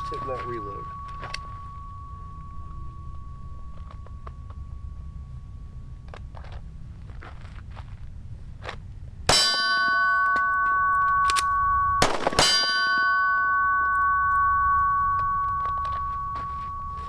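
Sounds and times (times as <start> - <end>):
steel target ringing: 0.0 - 6.8, 9.3 - 17.0
pistol shots: 12.0 - 12.8.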